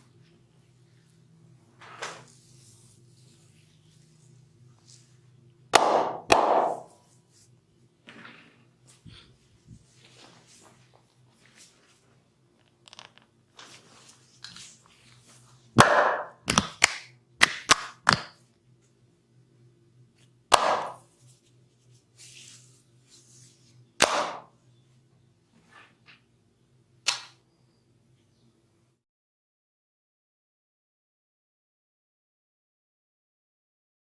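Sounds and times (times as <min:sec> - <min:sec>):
hands slapping bare skin: 0:05.8 - 0:06.9, 0:15.8 - 0:18.4, 0:20.5 - 0:21.0, 0:24.0 - 0:24.5, 0:27.1 - 0:27.4.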